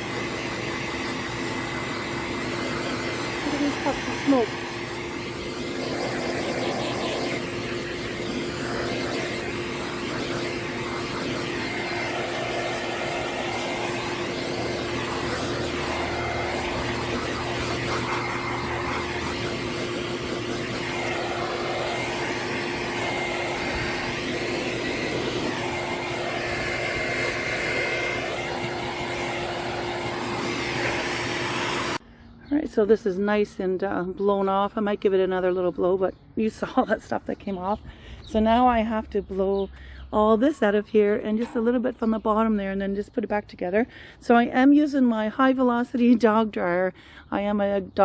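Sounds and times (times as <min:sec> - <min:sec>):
dog dryer blasting air: 0:00.0 - 0:32.0.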